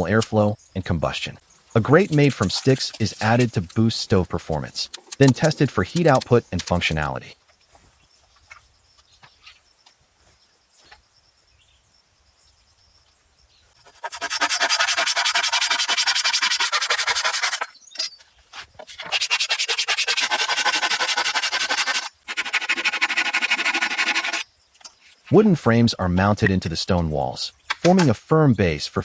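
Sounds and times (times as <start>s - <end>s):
hand tool rasping wood: 1.8s - 7.2s, 13.8s - 17.7s, 18.8s - 24.4s.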